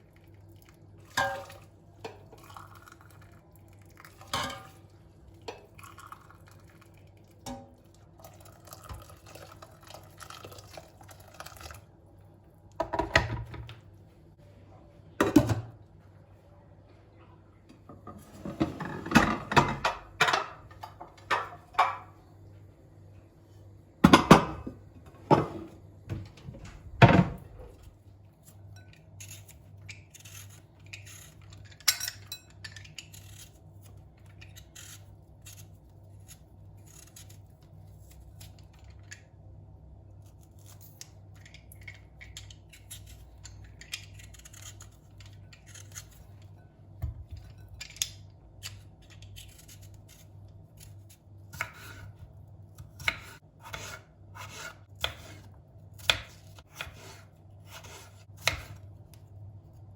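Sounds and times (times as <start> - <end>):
kitchenware clanking: 17.9 - 22.2, 24.0 - 27.8.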